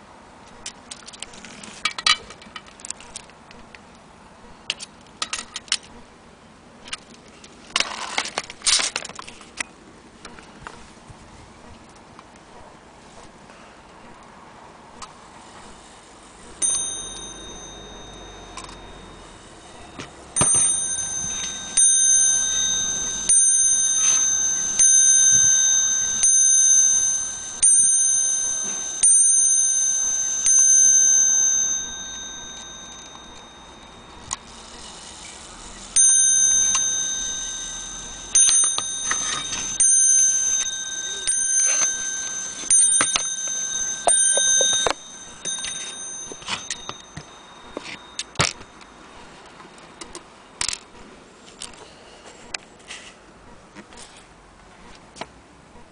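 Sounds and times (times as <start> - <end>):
clock hammer striking a bell: 16.5 - 49.4.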